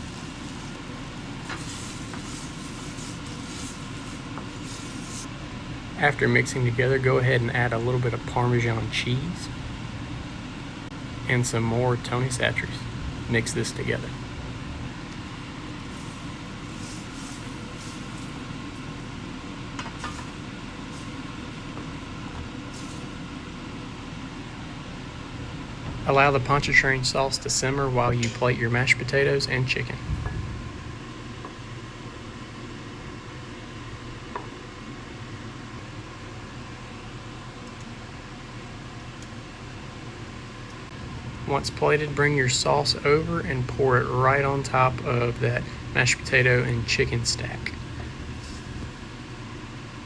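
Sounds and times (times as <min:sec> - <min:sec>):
sauce simmering in skillet: 0:00.0 - 0:06.0, 0:14.1 - 0:24.1
steady low hum: 0:00.0 - 0:50.0.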